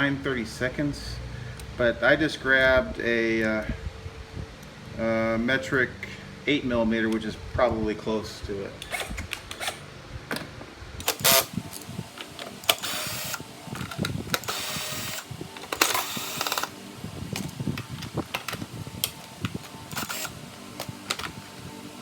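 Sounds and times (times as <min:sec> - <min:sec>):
ratchet wrench clicking: 0:11.0 - 0:11.5, 0:12.7 - 0:16.8, 0:19.9 - 0:20.4.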